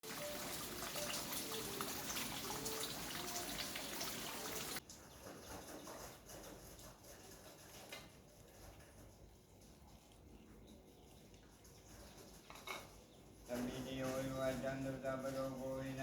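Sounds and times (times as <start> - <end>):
water trickling: 0.0 - 5.2.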